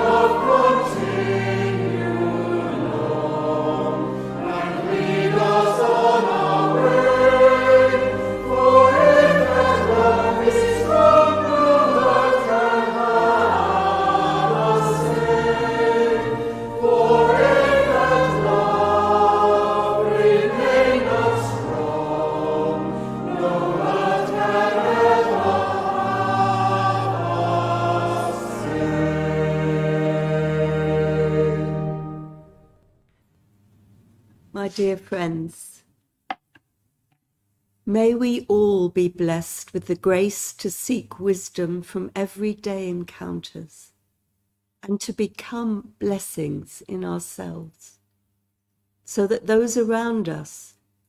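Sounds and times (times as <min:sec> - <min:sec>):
choir singing: 0:00.0 - 0:32.6.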